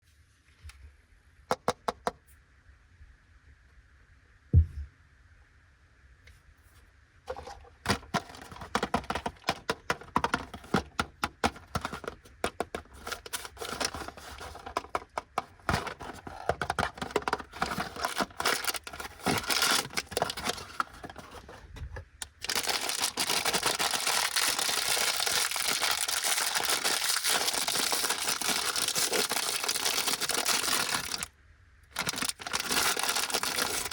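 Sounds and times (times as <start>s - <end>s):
plastic wrapper crinkling and tearing: 7.9s - 10.8s, 11.5s - 21.6s, 22.2s - 31.3s, 31.9s - 33.9s.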